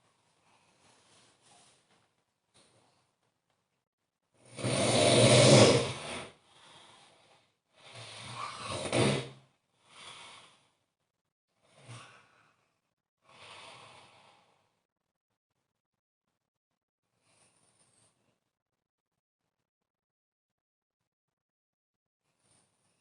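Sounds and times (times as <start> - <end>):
soft breathing: 0.1 - 2.0, 6.4 - 8.7, 17.1 - 18.4
person snoring: 4.4 - 7.2, 7.8 - 10.7, 11.6 - 12.6.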